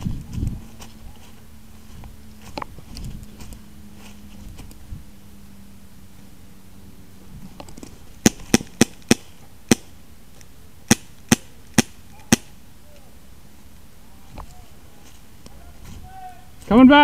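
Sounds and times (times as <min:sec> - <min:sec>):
airsoft gun shots: 0:08.2 - 0:09.9, 0:10.9 - 0:12.6.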